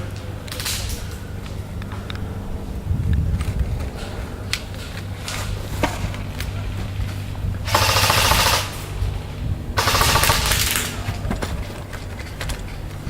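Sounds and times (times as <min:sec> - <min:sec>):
airsoft rifle firing bursts: 0:07.6 - 0:09.2, 0:09.8 - 0:11.4.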